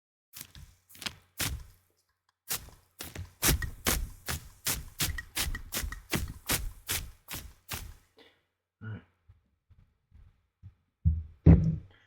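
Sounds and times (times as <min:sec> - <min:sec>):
spray bottle squirting on plastic: 0:00.4 - 0:01.8, 0:02.5 - 0:08.1.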